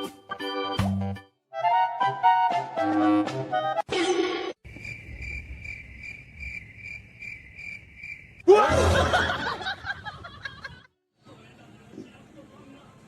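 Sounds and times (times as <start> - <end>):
cricket chirping: 4.6 - 8.5.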